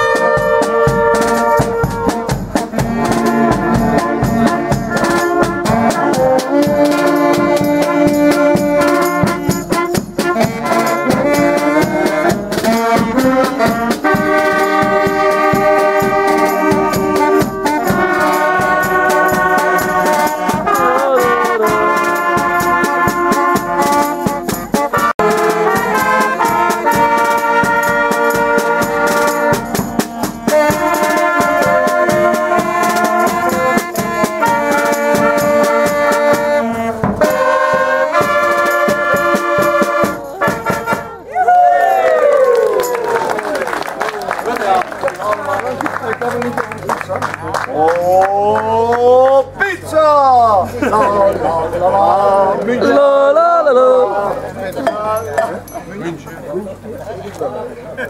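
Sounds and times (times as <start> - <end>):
brass band playing: 0.0 - 41.3.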